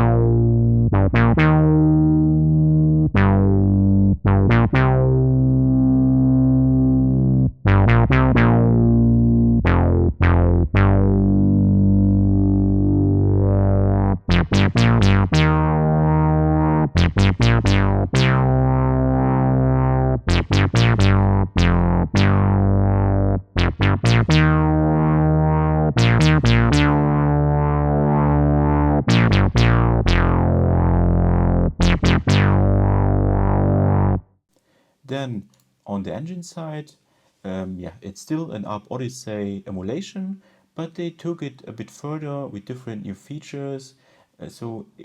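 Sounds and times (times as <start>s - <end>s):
synthesizer bass notes: 0.0s - 34.4s.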